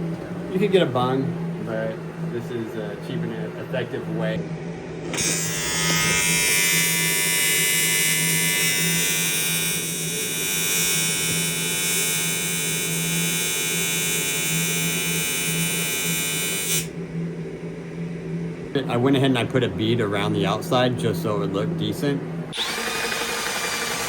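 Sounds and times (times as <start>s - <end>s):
welding arc buzzing: 5.0s - 17.0s.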